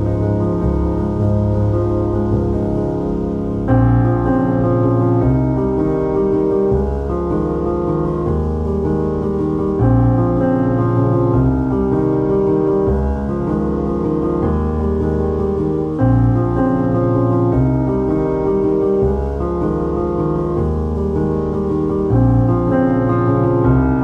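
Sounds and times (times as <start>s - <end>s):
piano chords: 0.0s - 24.0s
steady bass: 0.0s - 24.0s.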